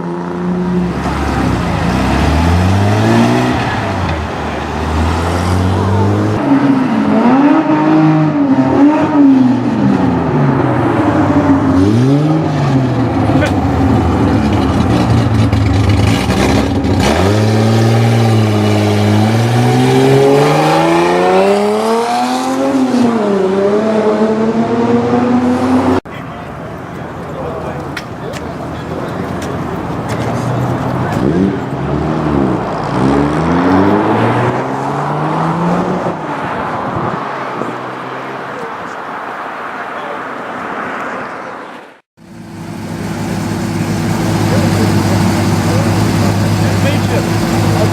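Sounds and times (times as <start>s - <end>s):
sports car engine revving: 0.0s - 26.0s, 42.3s - 47.9s.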